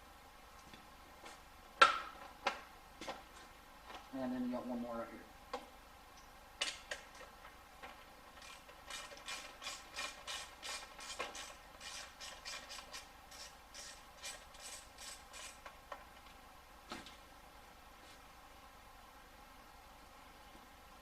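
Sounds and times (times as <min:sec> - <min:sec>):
ratchet wrench clicking: 0:08.4 - 0:15.6.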